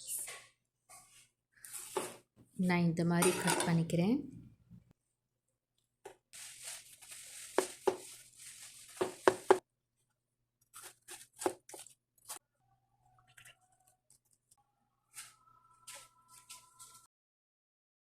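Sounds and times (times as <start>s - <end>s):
knife cutting watermelon: 10.6s - 12.4s.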